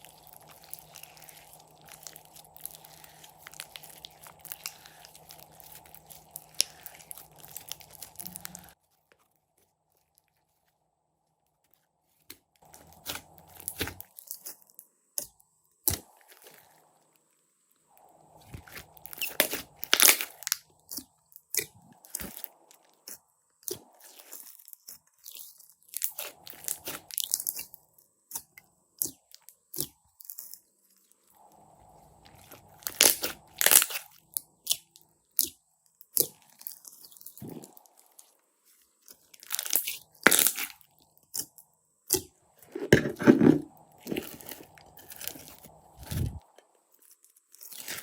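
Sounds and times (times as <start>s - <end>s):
slime crackling by hand: 0.0s - 8.8s, 12.6s - 16.8s, 18.0s - 27.7s, 31.5s - 43.3s.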